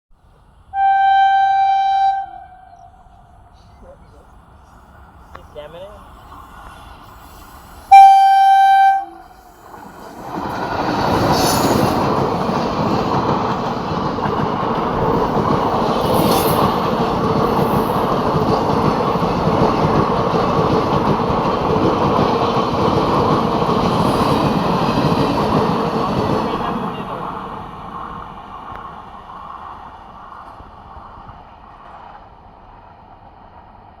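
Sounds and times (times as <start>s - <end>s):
train horn blast: 0.7s - 3.6s, 7.9s - 9.5s
train wheels rumbling and rattling: 8.9s - 34.0s.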